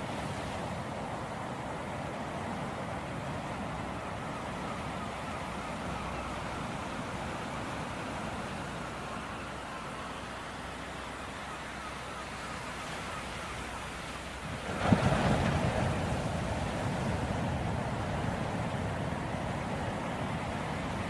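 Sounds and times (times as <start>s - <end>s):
ocean surf rushing: 0.0s - 21.0s
wave breaking: 14.4s - 20.9s.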